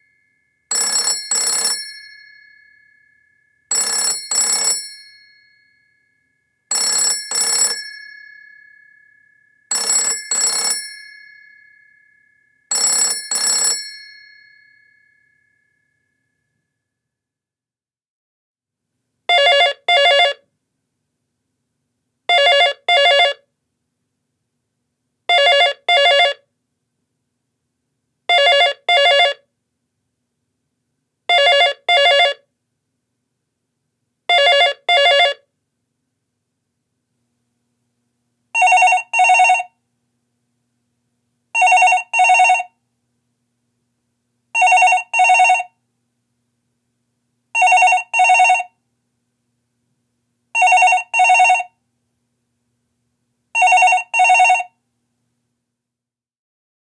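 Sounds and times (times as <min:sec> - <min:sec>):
different telephone ring: 0:00.0 - 0:15.8, 0:38.6 - 0:39.8, 0:41.6 - 0:42.8, 0:44.6 - 0:45.8, 0:47.6 - 0:48.8, 0:50.6 - 0:51.8, 0:53.6 - 0:54.8
telephone double ring: 0:00.7 - 0:02.6, 0:03.7 - 0:05.5, 0:06.7 - 0:08.8, 0:09.7 - 0:11.7, 0:12.7 - 0:14.8.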